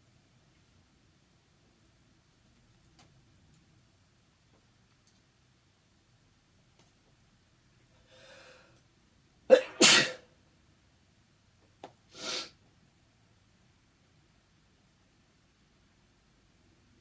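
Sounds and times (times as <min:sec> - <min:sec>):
intake of breath: 0:08.0 - 0:08.8
person sneezing: 0:09.5 - 0:10.3, 0:12.1 - 0:12.6.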